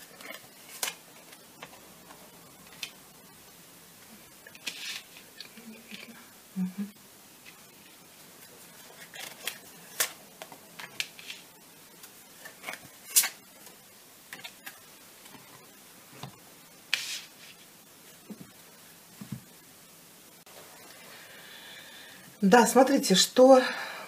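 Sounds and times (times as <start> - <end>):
cards sliding rustle: 0.0 - 3.0, 4.4 - 6.1, 8.7 - 15.6, 16.9 - 17.7.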